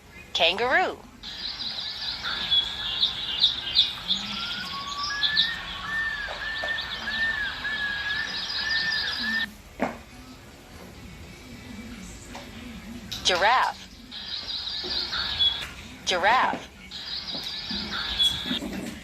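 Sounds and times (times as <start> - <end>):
birds chirping: 0.0 - 9.5, 13.1 - 18.8
bird whistling: 1.2 - 9.5, 14.2 - 15.8, 16.9 - 18.6.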